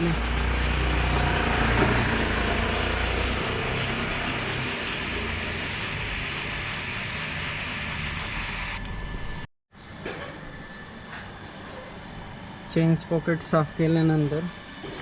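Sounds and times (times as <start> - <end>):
motorcycle chain whirring: 0.0 - 8.8.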